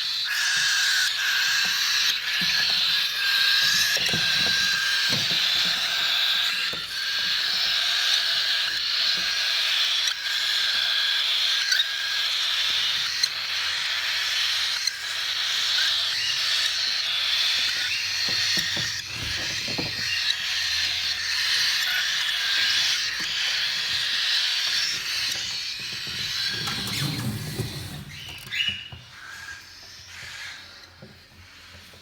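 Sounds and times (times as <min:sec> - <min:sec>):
parrots chattering: 0:00.0 - 0:32.0.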